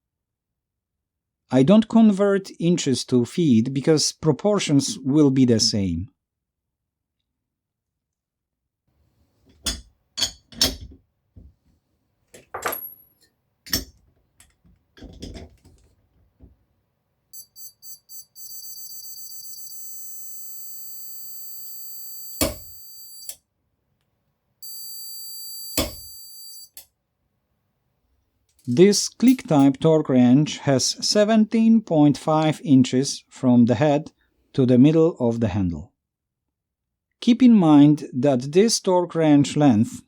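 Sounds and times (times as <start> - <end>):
metal tool clicks and knocks: 9.5 - 11.0, 12.4 - 15.8, 28.6 - 29.8
steady high beeping tone: 17.4 - 23.3, 24.6 - 26.8
electronic beeps: 17.4 - 23.4, 24.6 - 26.8.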